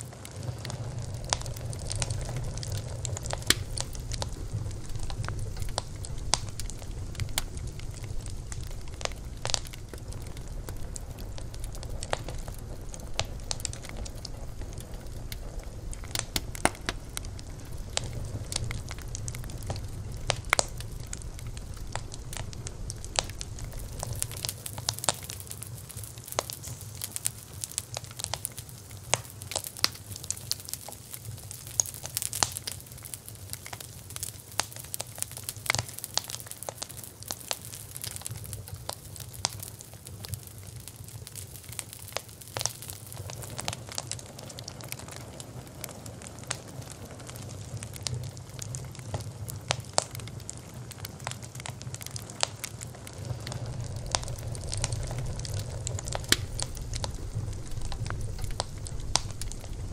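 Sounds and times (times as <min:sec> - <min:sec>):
low steady rumble: 0:00.0 - 0:29.1, 0:51.6 - 0:59.9
campfire crackling and popping: 0:00.0 - 0:59.9.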